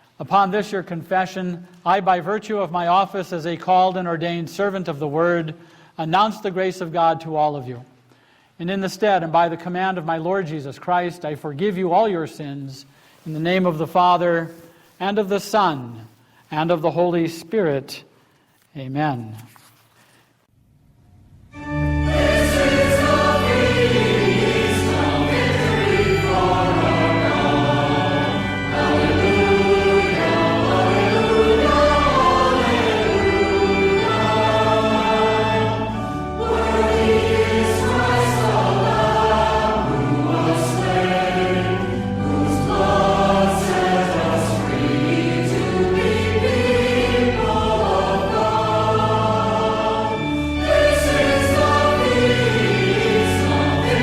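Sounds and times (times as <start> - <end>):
sustained instrumental accompaniment: 21.4 - 54.0
choir singing a hymn: 21.6 - 54.0.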